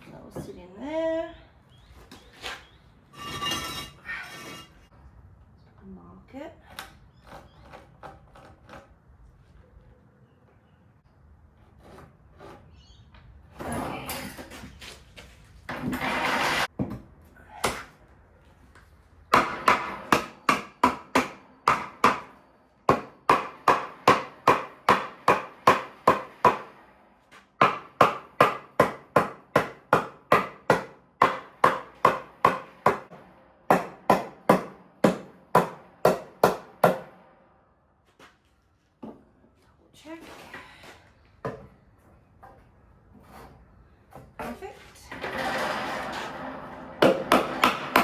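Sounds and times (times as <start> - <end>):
short scraping sounds: 13.6 - 16.7
hammer striking timber: 19.3 - 26.8, 27.6 - 37.2, 47.0 - 48.0.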